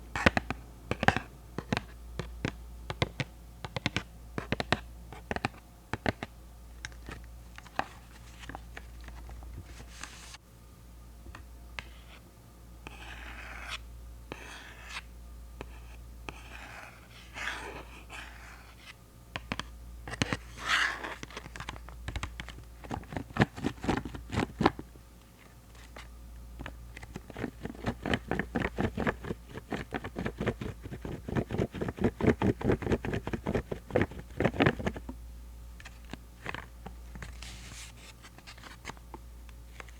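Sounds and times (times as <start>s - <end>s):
tapping on rubber eraser caps: 0.2s - 7.9s, 26.6s - 35.2s
scratchy rubs: 27.0s - 35.0s.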